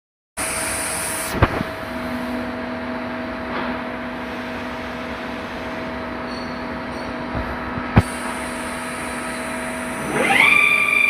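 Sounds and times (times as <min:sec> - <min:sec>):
lathe machine running: 0:08.1 - 0:11.0.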